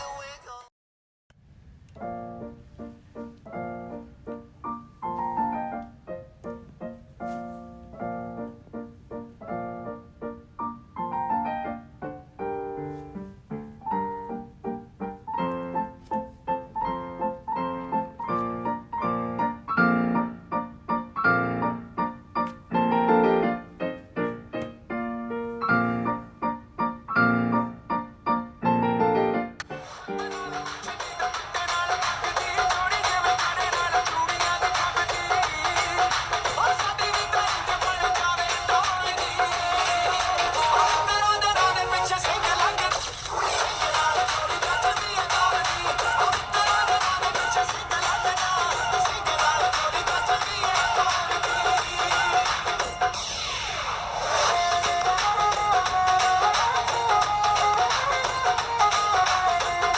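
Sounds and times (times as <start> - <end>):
lively piano tune: 2.0 - 43.1, 54.4 - 59.9.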